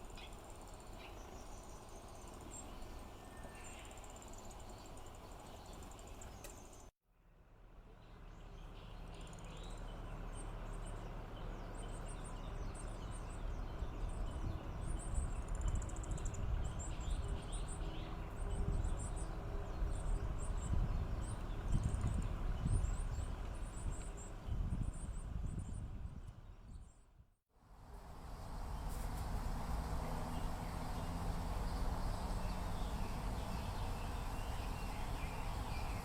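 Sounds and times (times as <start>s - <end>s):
small birds chirping: 0.0s - 6.9s, 8.0s - 27.0s, 28.0s - 36.0s.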